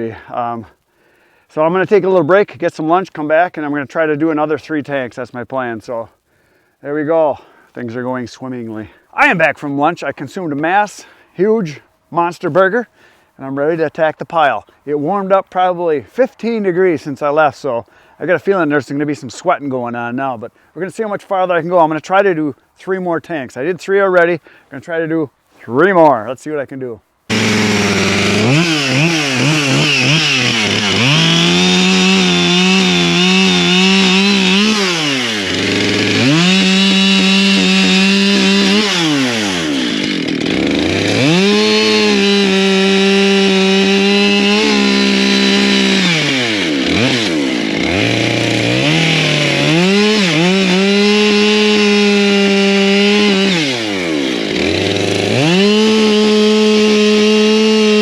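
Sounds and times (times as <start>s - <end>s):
chainsaw cutting wood: 27.3s - 58.0s.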